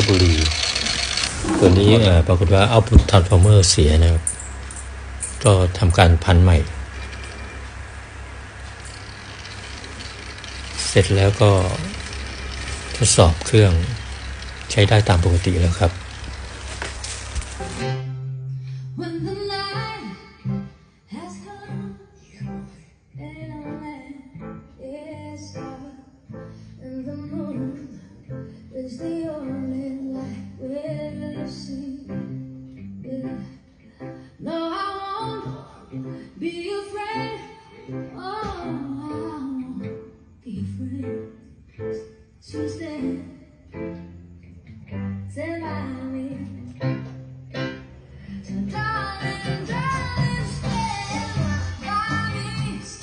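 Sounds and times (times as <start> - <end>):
guitar accompaniment: 0.0 - 53.0
woman singing: 19.0 - 20.5, 21.1 - 22.5, 23.2 - 26.1, 26.8 - 32.4, 33.0 - 41.3, 42.5 - 43.5, 45.4 - 46.6, 48.4 - 53.0.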